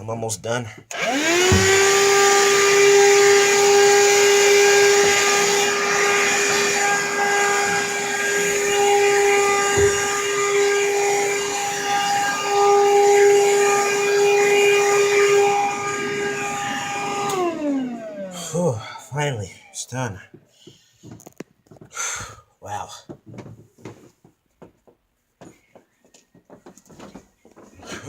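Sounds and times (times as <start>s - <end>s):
vacuum cleaner running: 0.9s - 19.8s.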